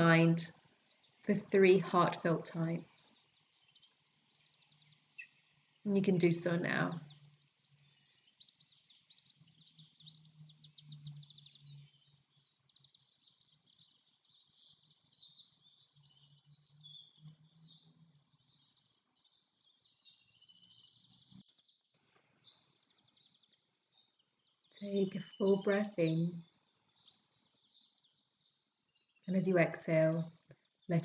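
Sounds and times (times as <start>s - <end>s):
small birds chirping and trilling: 0.0s - 31.0s.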